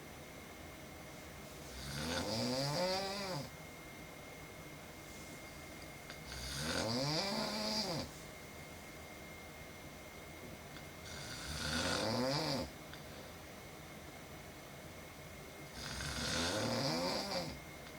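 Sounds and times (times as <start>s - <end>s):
woman snoring: 1.7s - 3.5s, 6.2s - 8.1s, 11.0s - 12.7s, 15.7s - 17.6s.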